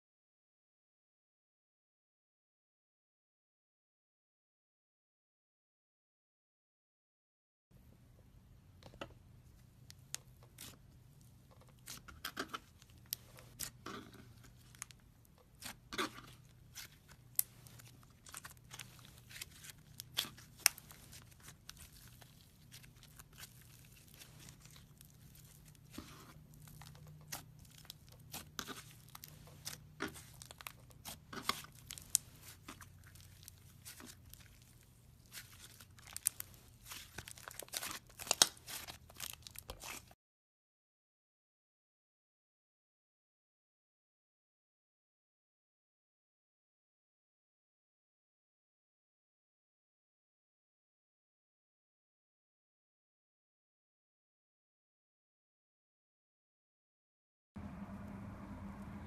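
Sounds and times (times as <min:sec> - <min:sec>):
slime crackling and popping: 0:11.8 - 0:40.1
faint steady hum: 0:57.6 - 0:59.0.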